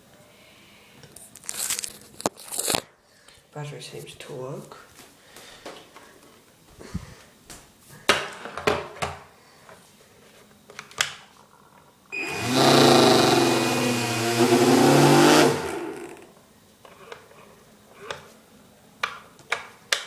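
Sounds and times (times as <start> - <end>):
electric motor whining: 12.2 - 16.3.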